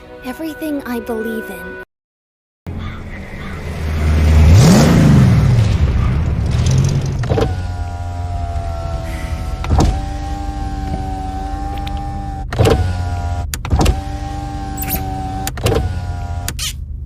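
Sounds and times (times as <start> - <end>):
vehicle engine rumbling: 2.7 - 17.0.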